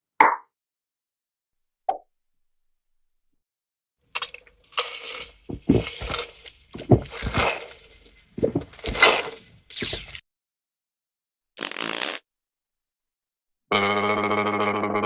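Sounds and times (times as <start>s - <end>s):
slurping through a straw: 11.6s - 12.2s.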